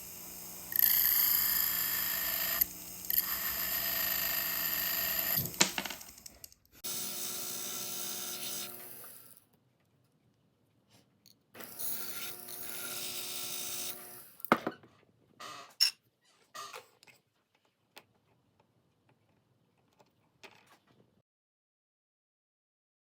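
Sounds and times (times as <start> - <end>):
small motorised hand tool running: 0.0 - 9.4, 11.6 - 14.5.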